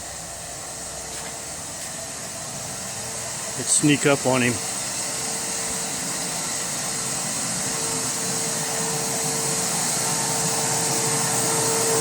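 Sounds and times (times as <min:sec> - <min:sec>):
sandblaster hissing: 0:03.6 - 0:12.0.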